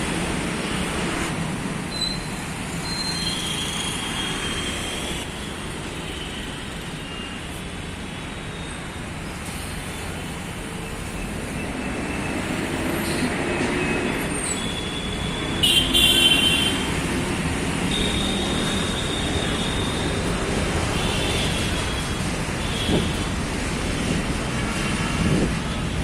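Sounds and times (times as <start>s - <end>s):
passing vehicles: 0.0s - 26.0s
car horns honking: 15.6s - 16.9s.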